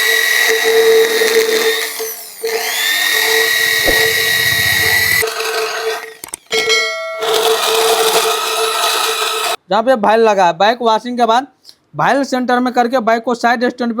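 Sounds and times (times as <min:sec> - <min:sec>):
electric grinder cutting metal: 0:00.0 - 0:06.4, 0:07.2 - 0:09.6.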